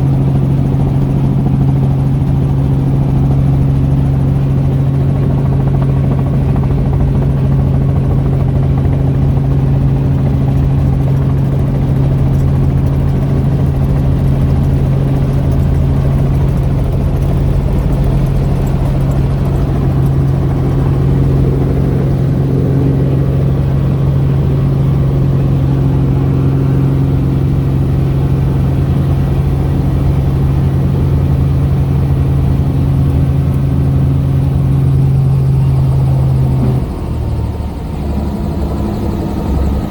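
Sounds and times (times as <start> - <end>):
helicopter rotor and engine drone: 0.0 - 39.9.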